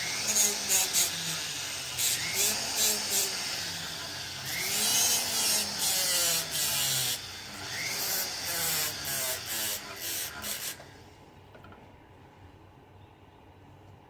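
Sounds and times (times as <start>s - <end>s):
rotary tool grinding metal: 0.0s - 11.0s.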